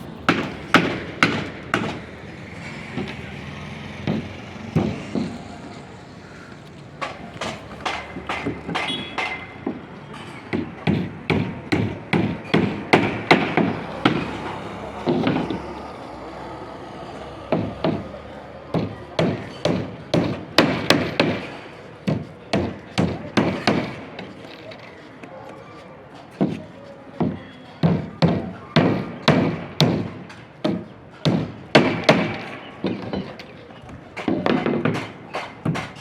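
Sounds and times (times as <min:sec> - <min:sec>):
sharp knocks: 0:00.2 - 0:03.3, 0:04.0 - 0:05.5, 0:07.0 - 0:15.8, 0:17.5 - 0:18.1, 0:34.2 - 0:36.0.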